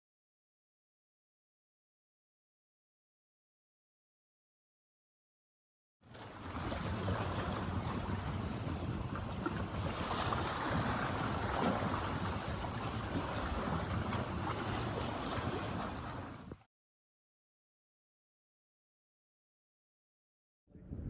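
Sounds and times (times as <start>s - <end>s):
waves washing: 6.1s - 16.7s
wind blowing across microphone: 6.2s - 16.6s, 20.7s - 21.0s
steady low rumble: 20.7s - 21.0s.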